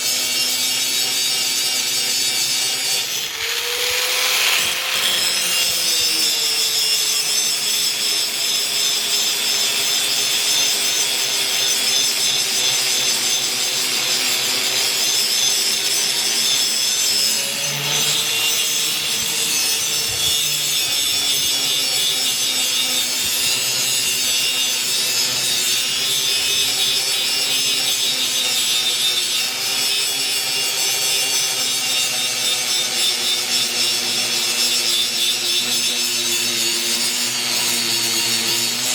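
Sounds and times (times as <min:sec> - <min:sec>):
grinder sharpening steel: 0:00.0 - 0:38.9
grinder motor hum: 0:01.5 - 0:08.0, 0:12.4 - 0:26.1.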